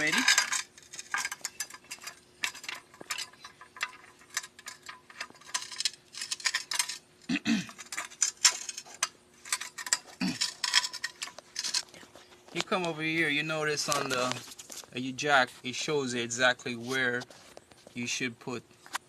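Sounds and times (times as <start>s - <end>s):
car jack metallic clinking: 0.0s - 11.9s.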